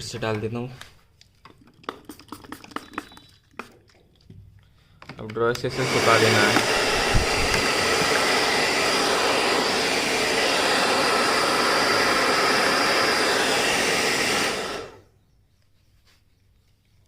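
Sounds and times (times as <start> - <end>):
hair dryer blowing: 5.6 - 15.1.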